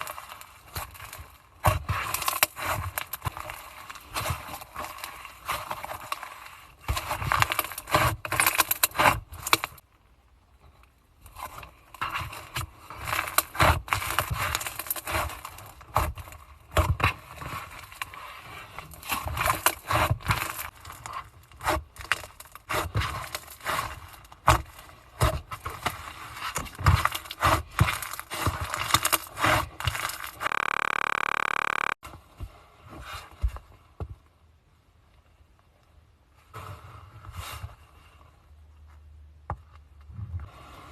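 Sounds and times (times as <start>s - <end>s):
steady hum: 30.5s - 32.0s.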